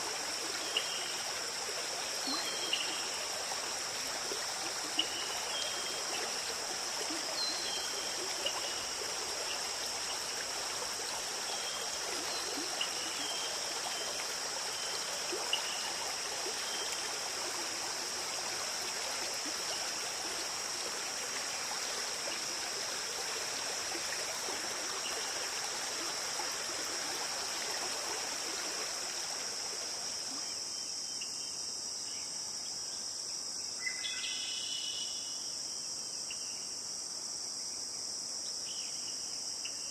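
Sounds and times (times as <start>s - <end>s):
running water stream: 0.0s - 30.7s
insect drone: 0.0s - 39.9s.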